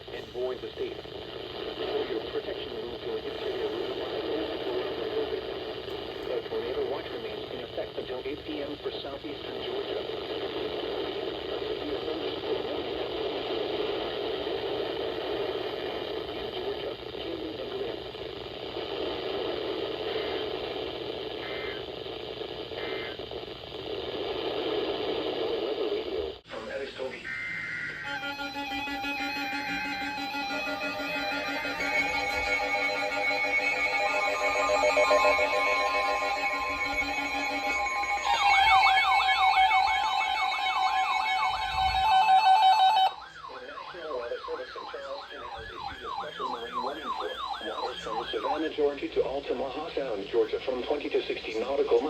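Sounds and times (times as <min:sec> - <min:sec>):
radio static hiss: 0:00.0 - 0:52.0
electronic siren yelp: 0:27.1 - 0:48.7
short data tone bursts: 0:27.5 - 0:42.2.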